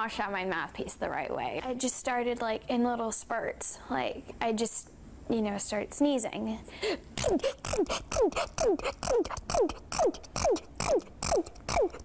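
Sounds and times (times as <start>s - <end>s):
girl sneezing: 7.2s - 10.7s.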